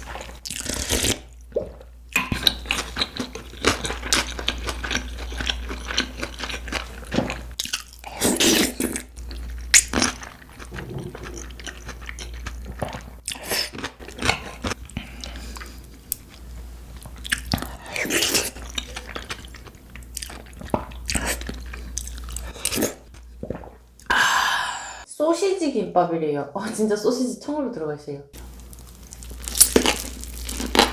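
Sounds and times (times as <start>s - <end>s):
chewing and biting food: 28.7s - 30.9s.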